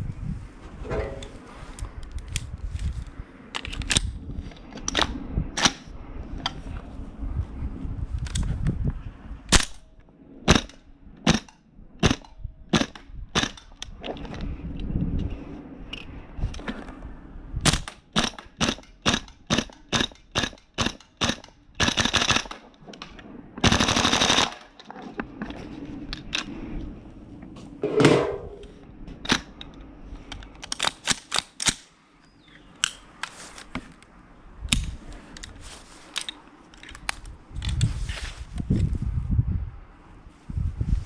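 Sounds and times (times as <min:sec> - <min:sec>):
airsoft rifle shots: 0:10.5 - 0:13.6, 0:17.6 - 0:22.6, 0:23.6 - 0:24.6
full-auto bursts: 0:17.7 - 0:22.7, 0:23.6 - 0:24.8
bolt cycling: 0:29.2 - 0:31.9.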